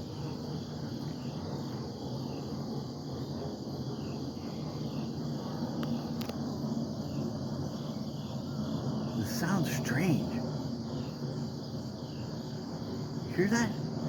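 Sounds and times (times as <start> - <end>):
crickets chirping: 0.0 - 14.0
jet aircraft rumbling overhead: 0.0 - 14.0.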